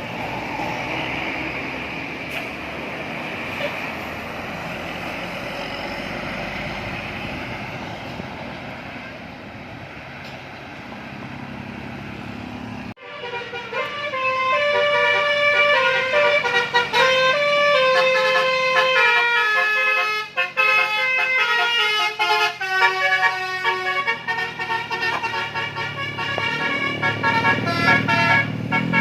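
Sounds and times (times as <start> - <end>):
vehicle road and engine noise: 0.0 - 29.0
bus musical horn tune: 13.0 - 29.0.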